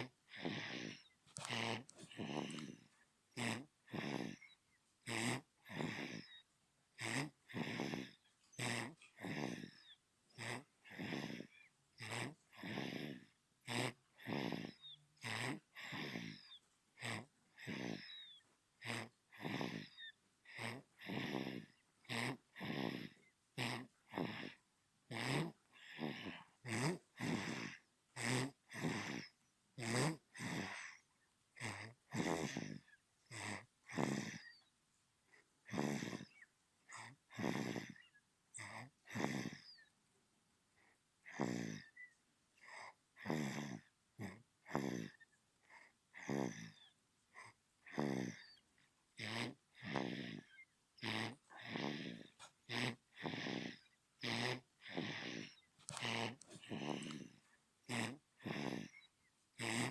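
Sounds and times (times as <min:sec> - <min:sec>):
baby snoring: 0:00.0 - 0:34.7, 0:35.4 - 0:39.9, 0:40.8 - 0:59.9.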